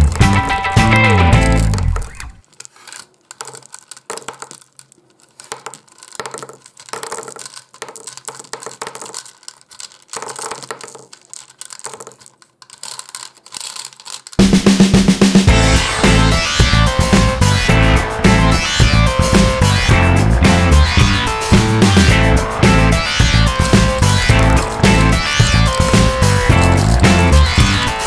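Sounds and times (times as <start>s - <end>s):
small plastic clicks: 1.4s - 14.4s
wrappers crinkling: 1.4s - 15.0s.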